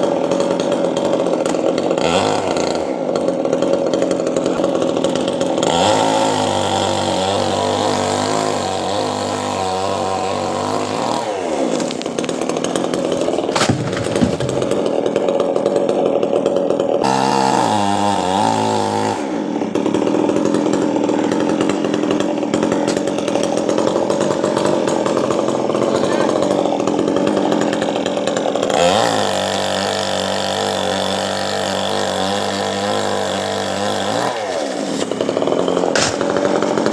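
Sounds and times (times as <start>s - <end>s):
chainsaw cutting tree trunk: 0.0s - 36.9s
wood cracking: 10.4s - 17.1s, 19.7s - 36.9s.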